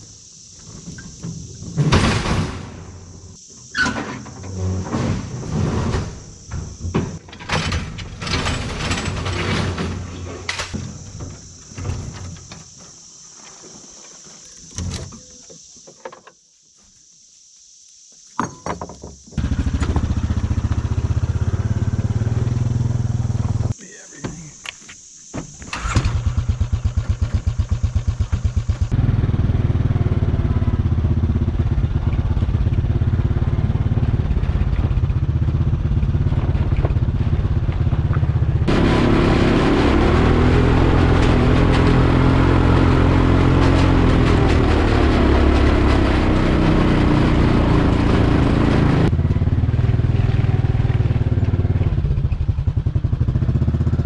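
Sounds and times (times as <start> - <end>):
atv engine running: 19.4 - 23.8, 25.8 - 54.0.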